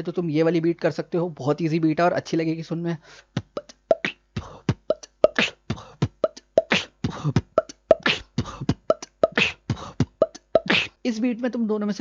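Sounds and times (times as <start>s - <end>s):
beatboxing: 3.3s - 11.0s.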